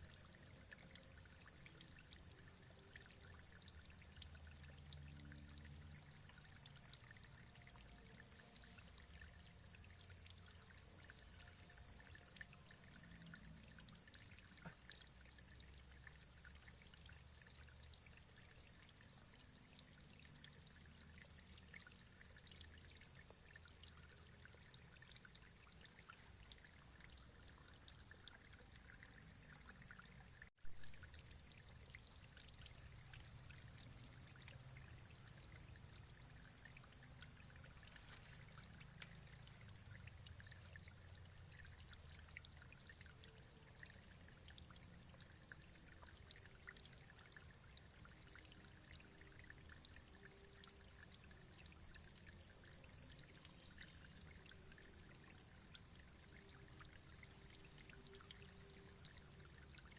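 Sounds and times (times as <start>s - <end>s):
faint running water: 0.0s - 59.9s.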